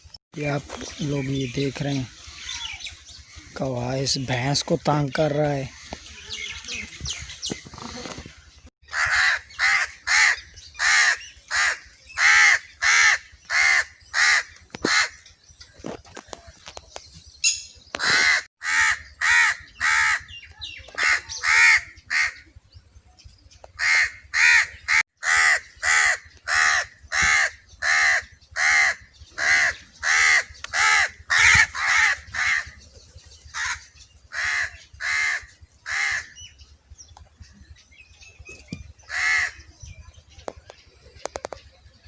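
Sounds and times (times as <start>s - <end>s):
crow cawing: 8.9s - 15.2s, 18.0s - 22.4s, 23.8s - 32.8s, 33.6s - 36.4s, 39.0s - 39.7s.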